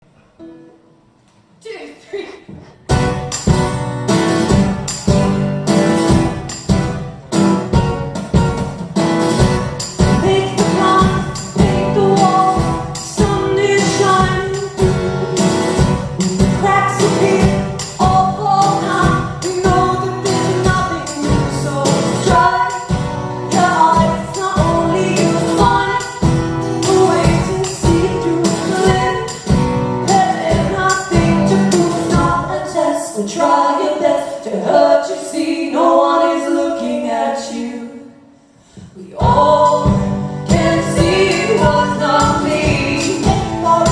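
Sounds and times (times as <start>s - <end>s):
strummed acoustic guitar: 2.7s - 32.8s, 39.2s - 43.9s
wordless vocal harmonies: 10.0s - 43.9s.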